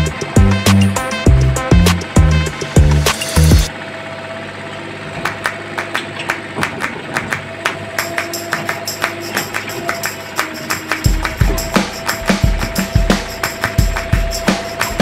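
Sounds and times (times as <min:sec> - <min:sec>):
heavy bass beat: 0:00.0 - 0:03.7, 0:11.0 - 0:15.0
regular percussion beat: 0:00.0 - 0:03.7, 0:08.0 - 0:15.0.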